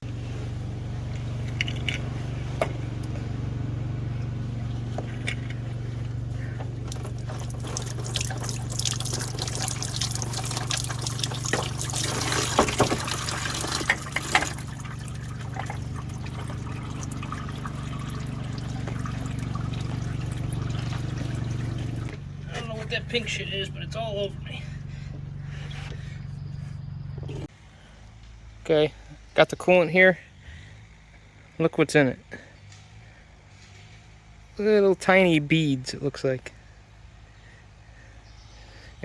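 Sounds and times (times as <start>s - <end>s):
steady low hum: 0.0s - 29.4s
coolant pouring and splashing: 4.0s - 23.4s
filter clicks and knocks: 4.9s - 22.2s.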